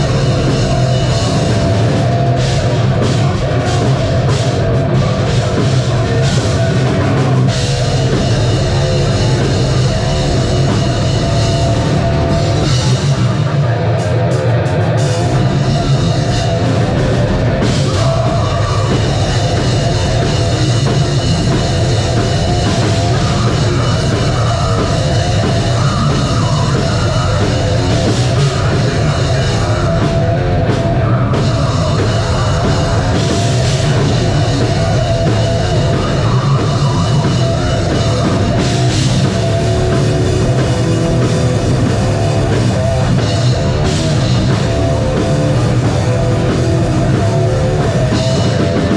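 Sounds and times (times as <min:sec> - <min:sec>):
drum kit: 0:00.0 - 0:48.9
live metal band playing: 0:00.0 - 0:48.9.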